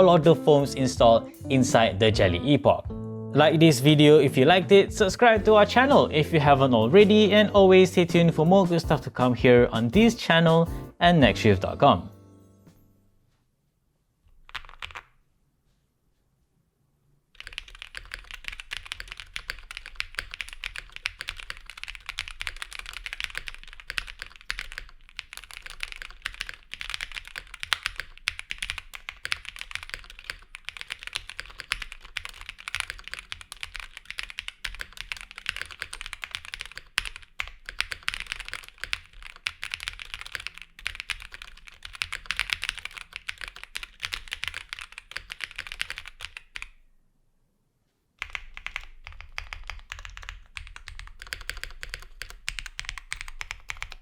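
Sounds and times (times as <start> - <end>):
fast mechanical keyboard typing: 14.4 - 15.2, 17.4 - 46.8, 48.2 - 54.0.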